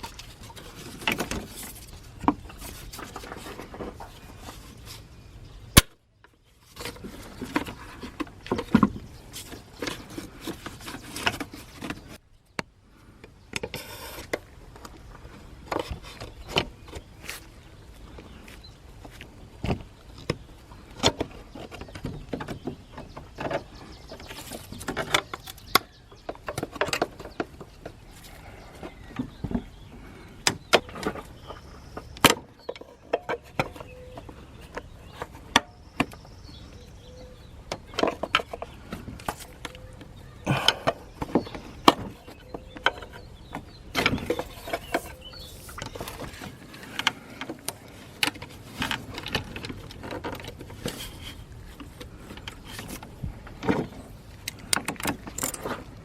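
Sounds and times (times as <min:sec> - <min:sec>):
hand tools clinking and knocking: 0:37.7 - 0:56.0.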